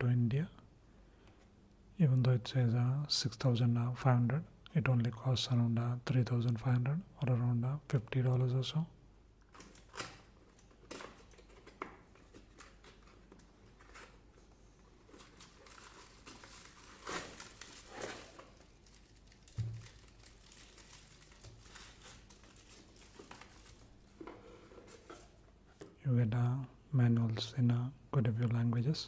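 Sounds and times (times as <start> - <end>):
paper and packaging rustling: 9.5 - 25.4.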